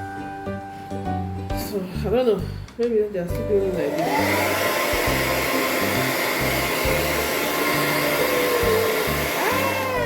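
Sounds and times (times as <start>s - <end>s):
hair dryer blowing: 3.7s - 10.0s.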